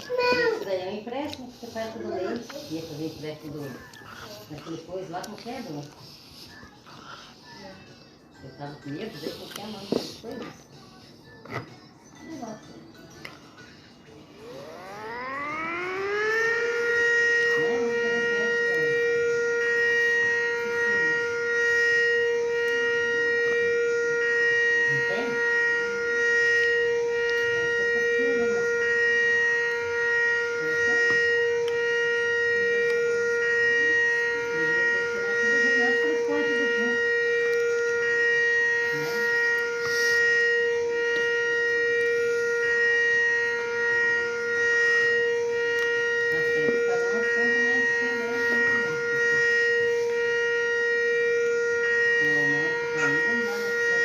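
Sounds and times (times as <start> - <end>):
faint voices talking: 0.0 - 54.0
siren steady tone: 0.0 - 54.0.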